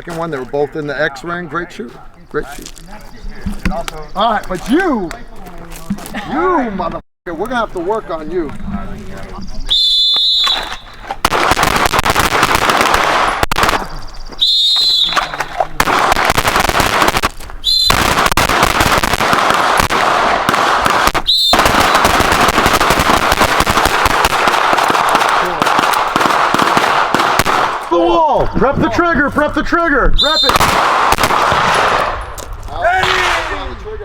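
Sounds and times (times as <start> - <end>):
shrill whistle blasts: 9.6 - 11.0, 13.9 - 15.4, 17.6 - 18.1, 21.2 - 22.0, 30.2 - 30.7
rapid pistol fire: 11.2 - 13.9, 15.8 - 27.9, 30.4 - 32.2.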